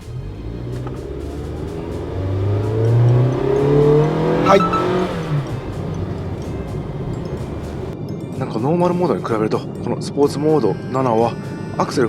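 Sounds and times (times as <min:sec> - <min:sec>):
van engine accelerating hard: 0:00.0 - 0:08.0.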